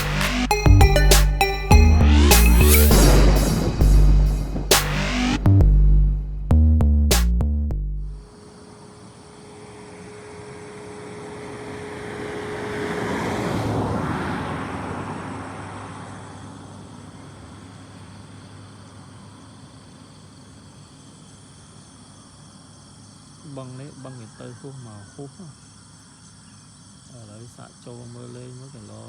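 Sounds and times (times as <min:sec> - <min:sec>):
steady hum: 0:08.0 - 0:12.8
engine passing by: 0:08.3 - 0:19.5.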